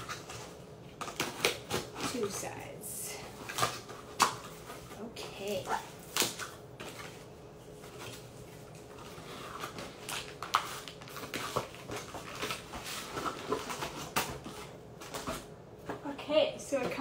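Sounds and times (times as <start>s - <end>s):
packaging crinkling: 6.0s - 15.3s.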